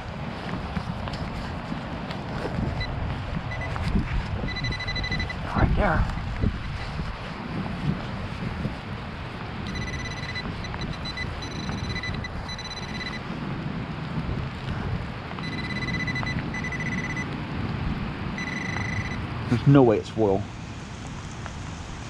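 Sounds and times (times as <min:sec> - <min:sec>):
wind rumbling on microphone: 0:00.0 - 0:22.0
metal detector buzzing tone: 0:04.5 - 0:05.6, 0:09.6 - 0:13.2, 0:15.4 - 0:17.3, 0:18.4 - 0:19.2.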